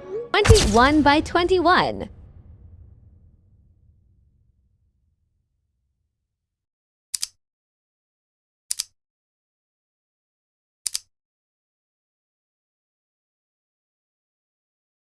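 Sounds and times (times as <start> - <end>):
sharp double clicks: 7.2 - 7.4, 8.7 - 8.9, 10.9 - 11.1.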